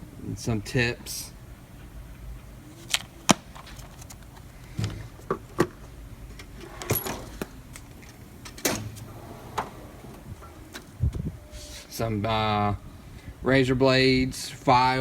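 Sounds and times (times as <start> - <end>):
tools clinking and rattling: 2.8 - 11.0
metal toolbox drawers shutting: 6.4 - 11.0.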